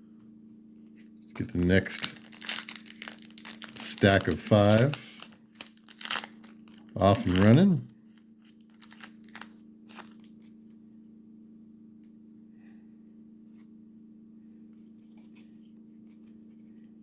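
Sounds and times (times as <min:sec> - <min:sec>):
steady low hum: 0:00.0 - 0:17.0
foil card packs crinkling: 0:01.4 - 0:10.5.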